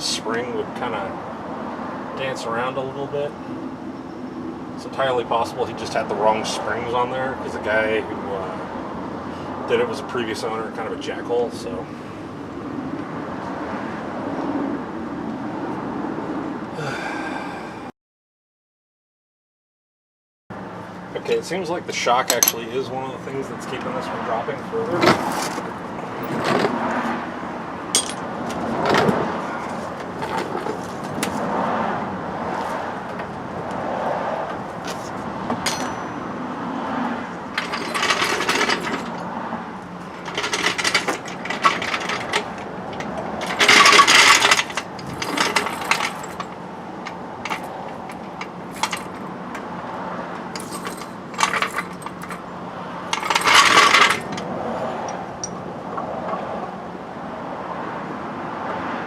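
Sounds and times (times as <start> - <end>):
metallic rattling: 27.9 - 31.3, 37.5 - 39.3, 40.0 - 49.4, 50.4 - 55.7
hand tools clinking on steel: 28.0 - 28.3, 34.9 - 36.2, 37.6 - 39.2, 40.1 - 49.2, 50.5 - 52.4, 53.1 - 55.6.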